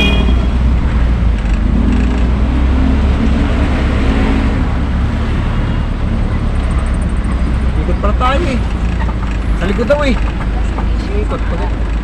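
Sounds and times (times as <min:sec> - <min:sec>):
truck engine rumbling: 0:00.0 - 0:12.0.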